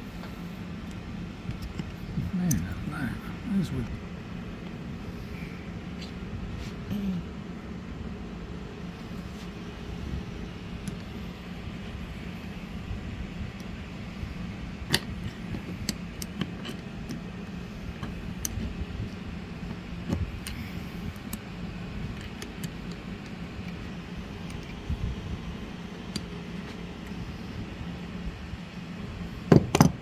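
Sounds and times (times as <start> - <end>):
low workshop hum: 0.0 - 30.0
metallic clicks and knocks of parts: 29.5 - 30.0.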